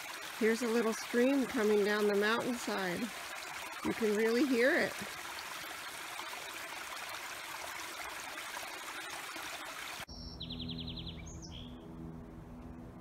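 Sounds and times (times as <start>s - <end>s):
stream rushing over rocks: 0.0s - 10.1s
birds chirping and trilling: 10.1s - 12.0s.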